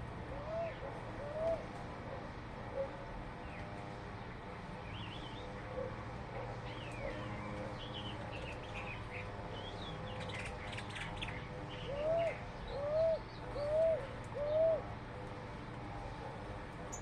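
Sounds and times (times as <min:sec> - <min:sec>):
small birds chirping and trilling: 0:03.3 - 0:14.8
rising and falling bird calls: 0:06.7 - 0:14.9.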